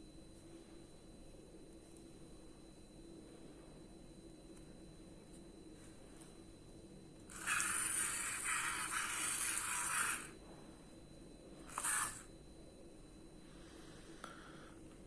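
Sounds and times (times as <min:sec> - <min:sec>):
electric motors whirring: 0:07.3 - 0:10.4, 0:11.7 - 0:12.3.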